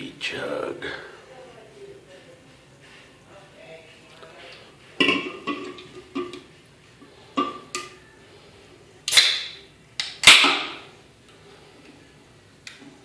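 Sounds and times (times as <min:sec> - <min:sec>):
can ring-pull popping open: 0:09.0 - 0:10.8.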